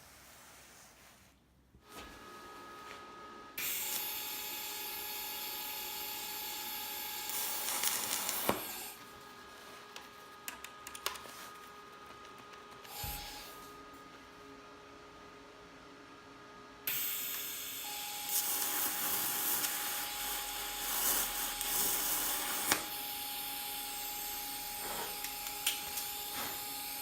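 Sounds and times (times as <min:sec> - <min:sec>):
welding arc hissing: 0:03.6 - 0:05.7, 0:06.3 - 0:09.0, 0:16.9 - 0:27.0.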